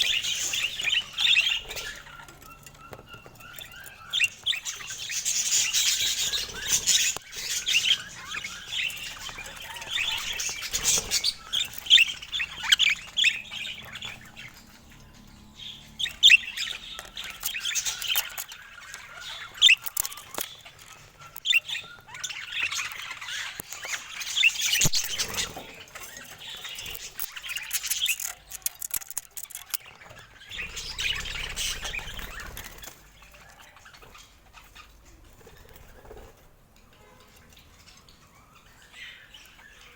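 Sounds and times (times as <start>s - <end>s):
budgerigars chirping and squawking: 0.0s - 39.9s
sharp clicks: 26.9s - 30.1s.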